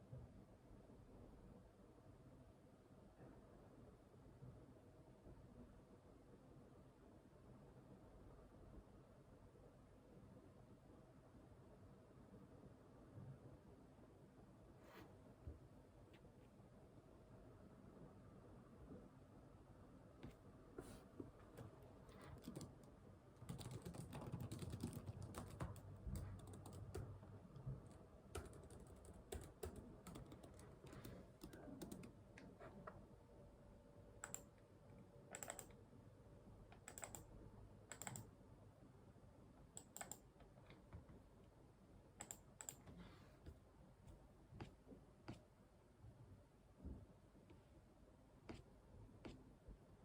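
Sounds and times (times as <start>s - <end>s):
keyboard typing: 21.5s - 32.2s, 34.2s - 34.6s, 35.3s - 35.8s, 36.8s - 37.3s, 37.9s - 38.3s, 39.8s - 40.3s, 42.2s - 42.9s.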